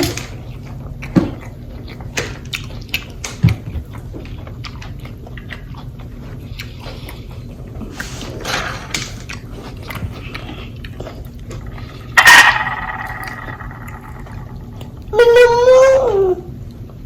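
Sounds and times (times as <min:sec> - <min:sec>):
wet chewing: 0:00.4 - 0:08.1, 0:09.1 - 0:12.1
pitched whine: 0:12.2 - 0:15.0.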